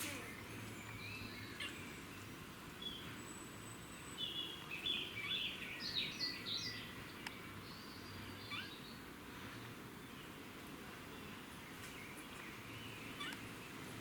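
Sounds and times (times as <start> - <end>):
squirrels chirping and squeaking: 1.4 - 2.0, 8.5 - 8.8, 13.0 - 13.6.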